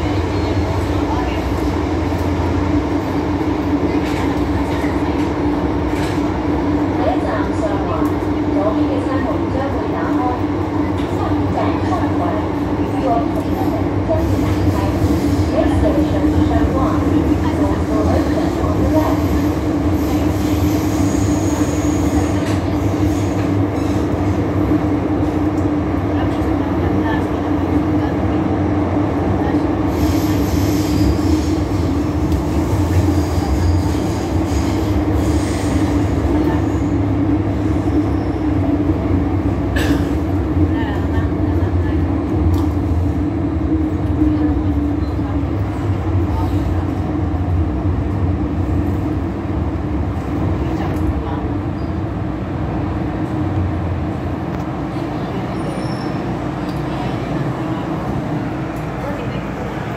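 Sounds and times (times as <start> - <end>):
underground train rumble: 0.0 - 59.9
faint high wheel squeal: 55.6 - 56.3.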